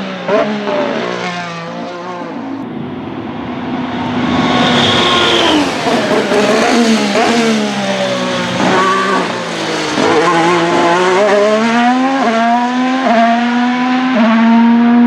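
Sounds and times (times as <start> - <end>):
racing car engine: 0.0 - 15.0.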